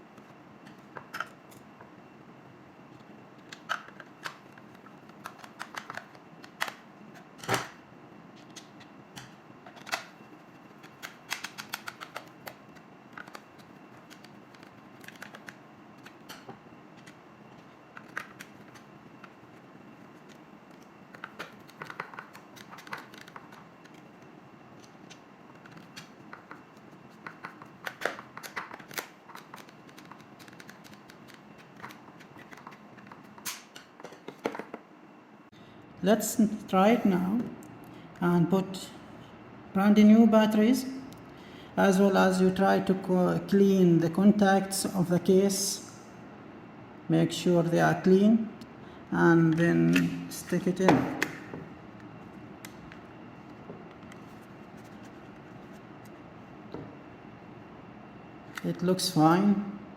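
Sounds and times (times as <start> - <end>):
plastic parts clicking together: 3.4 - 6.8, 10.8 - 17.2.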